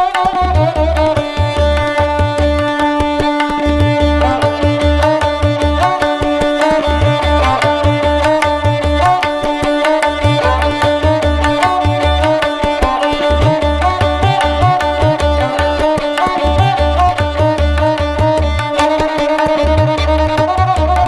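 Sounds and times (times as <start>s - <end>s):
plucked string melody: 0.0s - 21.0s.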